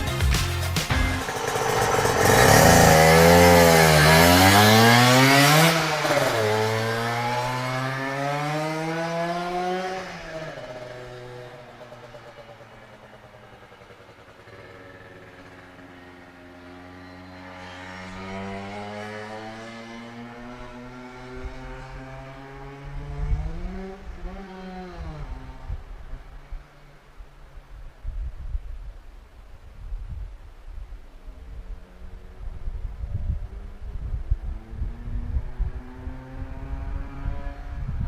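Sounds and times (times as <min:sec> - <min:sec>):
two-stroke engine revving hard: 0:01.1 - 0:25.7.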